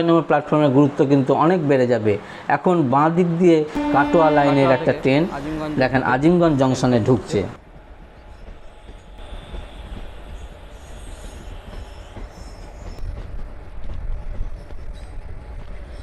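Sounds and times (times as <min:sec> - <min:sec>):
high wheel squeal: 0:03.7 - 0:07.0
train wheels rumbling on rails: 0:05.3 - 0:16.0.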